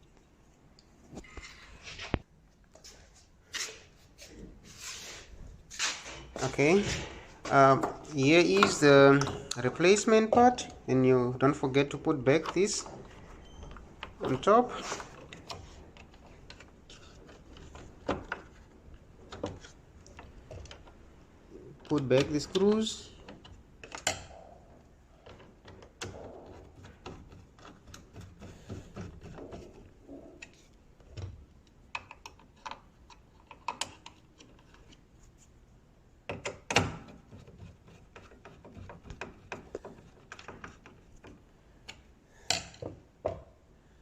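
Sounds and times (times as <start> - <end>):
clicks and knocks on plastic and metal: 13.8 - 21.0, 25.2 - 29.9, 36.2 - 43.6.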